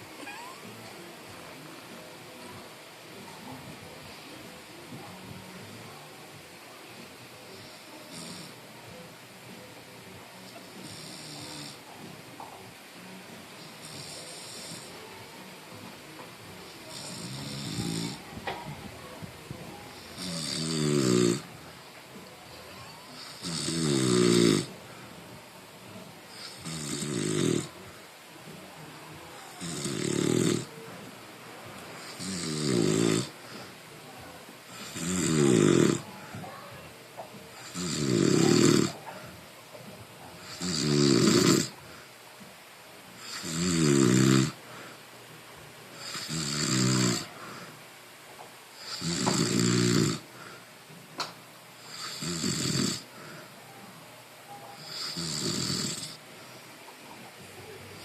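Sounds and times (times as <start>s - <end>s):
quiet breathing: 0.0s - 43.6s, 44.2s - 48.1s, 48.7s - 58.0s
snoring with breathy rasp: 16.9s - 18.2s, 20.0s - 21.5s, 26.3s - 27.7s, 29.6s - 30.7s, 32.0s - 33.7s, 34.7s - 36.1s, 37.6s - 39.0s, 40.4s - 41.7s, 43.2s - 44.6s, 46.0s - 47.7s, 48.8s - 50.3s, 51.9s - 53.1s, 54.8s - 56.2s.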